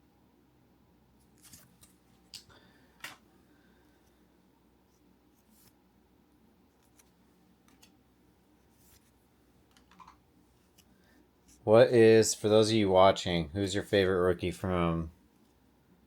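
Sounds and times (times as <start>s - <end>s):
trading cards rustling and ticking: 1.2s - 3.2s, 6.8s - 8.0s, 8.9s - 11.6s.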